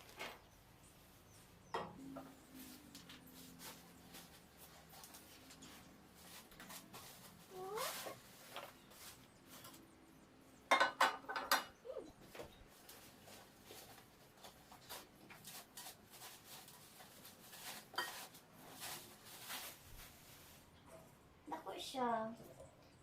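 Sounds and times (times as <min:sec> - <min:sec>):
cookware clattering: 0:10.7 - 0:11.8.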